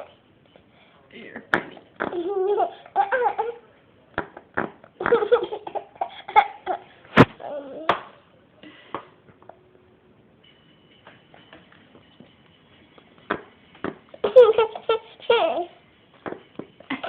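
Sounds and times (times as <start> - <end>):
child laughing: 14.2 - 15.8.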